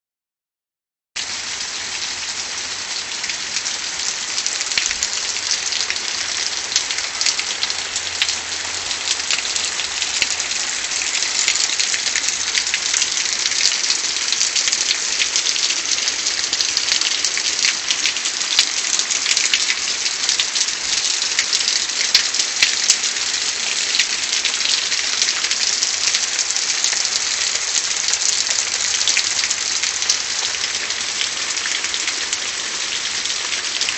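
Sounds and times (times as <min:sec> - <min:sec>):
heavy rain falling: 0:01.2 - 0:33.9.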